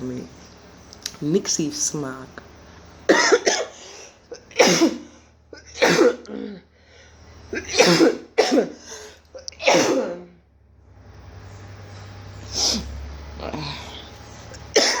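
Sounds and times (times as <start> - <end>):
person coughing: 3.1 - 6.7, 7.5 - 10.4, 14.7 - 15.0.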